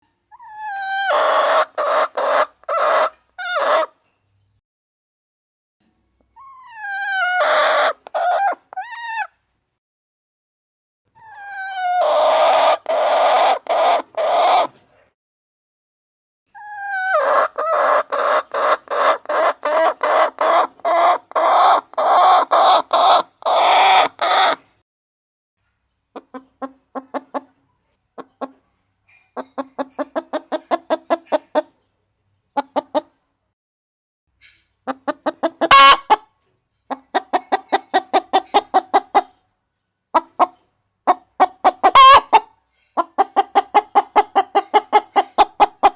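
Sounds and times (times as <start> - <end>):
hen clucking: 0.3 - 4.0, 6.4 - 9.4, 11.2 - 14.8, 16.6 - 24.7, 26.1 - 27.6, 28.2 - 31.9, 32.5 - 33.2, 34.8 - 36.3, 36.9 - 39.4, 40.1 - 45.9.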